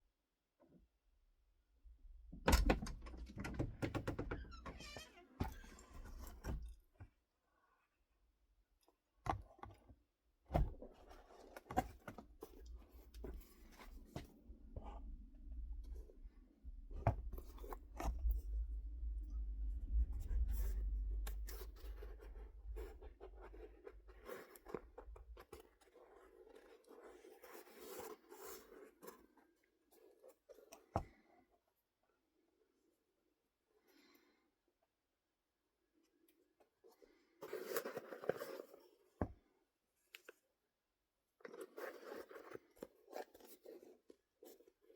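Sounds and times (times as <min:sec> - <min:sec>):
sharp knocks and clicks: 0:02.5 - 0:05.0
low rumble of handling: 0:12.9 - 0:25.5.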